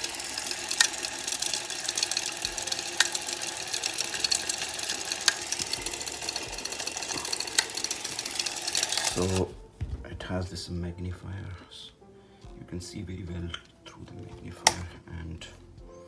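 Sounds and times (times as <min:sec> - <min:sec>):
camera clockwork motor clatter: 0:00.0 - 0:09.5.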